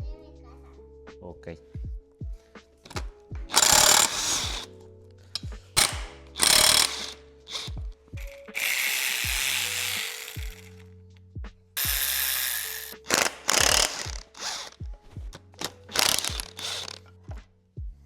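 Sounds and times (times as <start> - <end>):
background music: 0.0 - 18.0
ratchet loosening bolts: 2.9 - 4.7, 5.4 - 10.8, 11.8 - 17.1.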